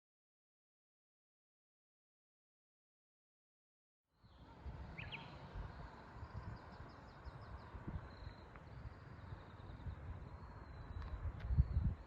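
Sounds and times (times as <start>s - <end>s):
faint bird chirps: 4.2s - 12.0s
wind rumble on microphone: 4.2s - 12.0s.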